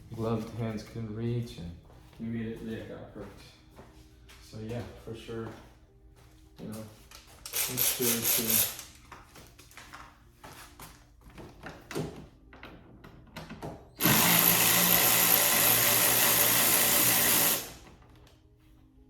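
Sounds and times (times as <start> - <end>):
power tool running: 7.5 - 8.9, 14.0 - 17.9.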